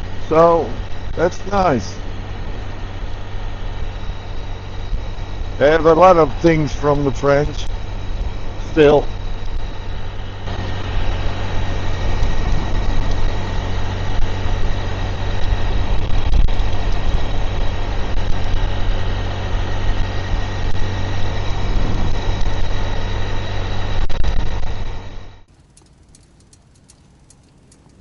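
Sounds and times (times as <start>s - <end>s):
motorbike engine running: 0.0s - 28.0s
road and wind noise: 0.0s - 28.0s.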